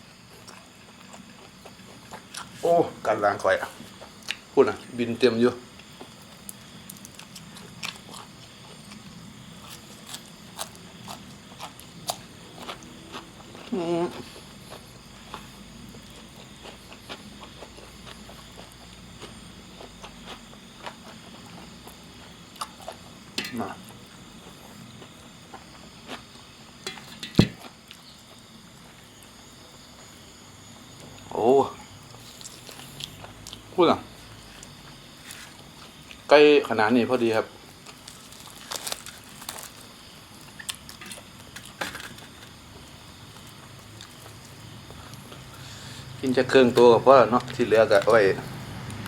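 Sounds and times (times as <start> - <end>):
chewing and mouth sounds: 9.6 - 23.1.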